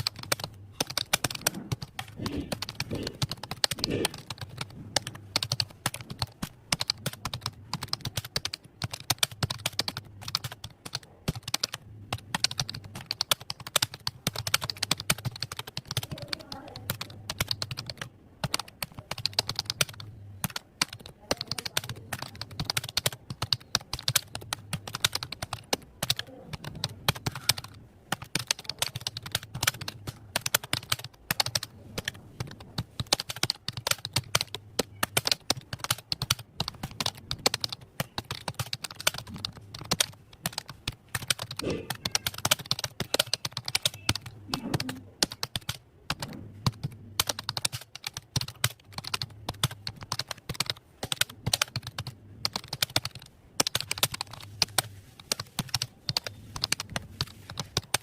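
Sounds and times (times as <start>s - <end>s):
fast typing on keyboard: 0.0s - 58.0s.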